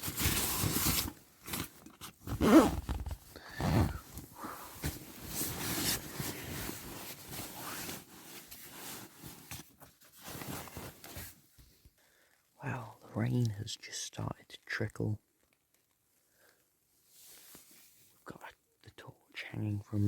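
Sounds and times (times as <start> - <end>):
tent fabric rustling: 0.0 - 11.5.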